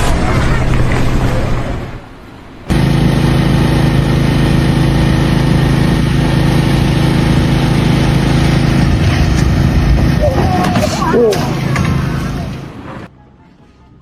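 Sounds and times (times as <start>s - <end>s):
engine running steadily: 2.7s - 13.1s.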